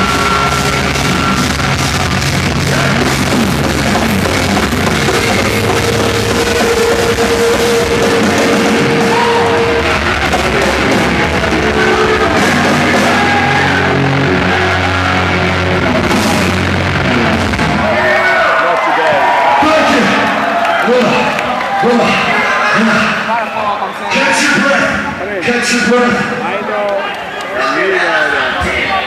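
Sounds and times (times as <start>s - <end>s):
drum kit: 0.0s - 18.2s
live rock band: 0.0s - 25.2s.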